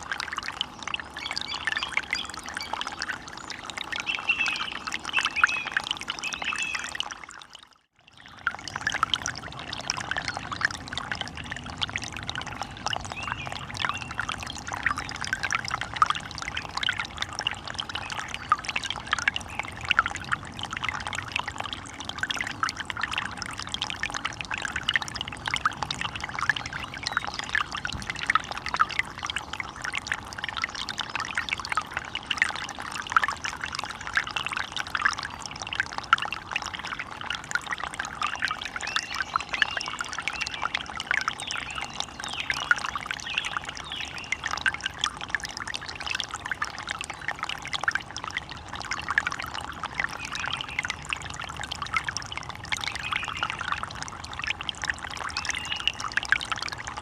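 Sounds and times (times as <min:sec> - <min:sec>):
running water babbling: 0:00.0 - 0:57.0.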